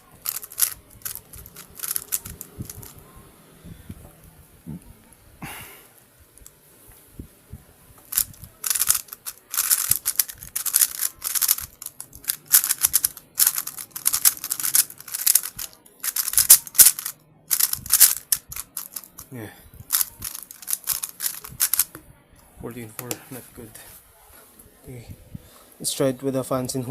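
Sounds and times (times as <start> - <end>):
speed cube clacking: 0.0 - 3.0, 8.1 - 19.3, 19.9 - 21.9.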